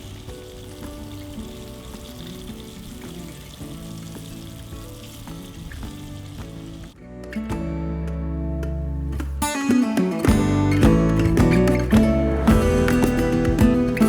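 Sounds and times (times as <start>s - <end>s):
fish frying in hot oil: 0.0s - 6.9s.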